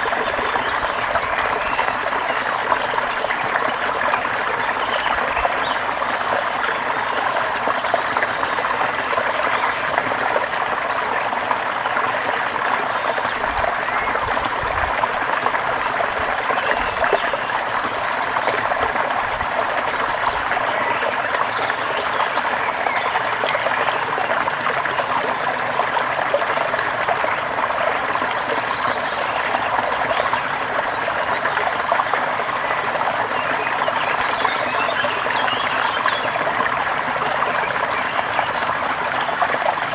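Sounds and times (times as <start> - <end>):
stream water splashing over rocks: 0.0 - 39.9.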